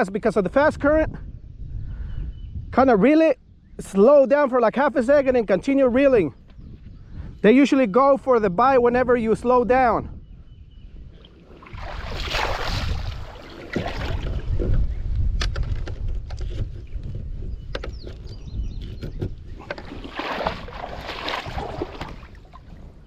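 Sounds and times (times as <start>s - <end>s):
wind rumble on microphone: 0.0s - 23.0s
paddle splashing through water: 11.2s - 14.8s, 19.6s - 22.8s.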